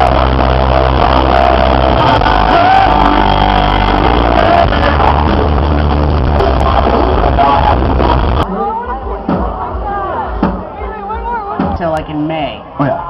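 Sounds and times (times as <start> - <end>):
person singing: 0.0 - 5.6
heavy bass: 0.0 - 13.0
loud rock music: 0.0 - 13.0.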